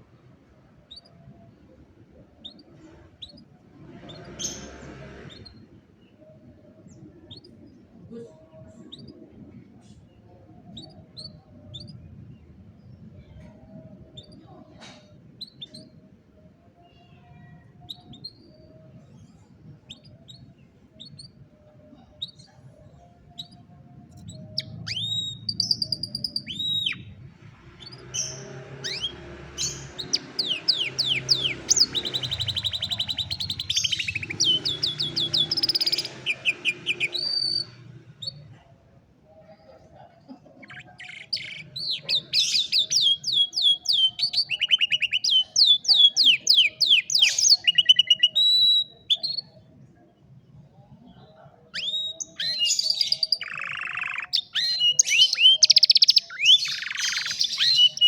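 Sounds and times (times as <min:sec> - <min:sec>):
canary singing: 0:02.4 - 0:05.7, 0:19.8 - 0:38.6, 0:39.9 - 0:49.6, 0:51.7 - 0:58.0.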